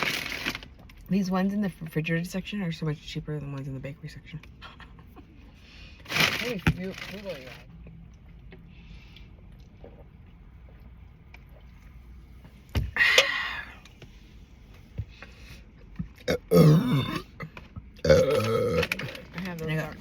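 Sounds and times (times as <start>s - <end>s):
person burping: 16.2s - 19.1s.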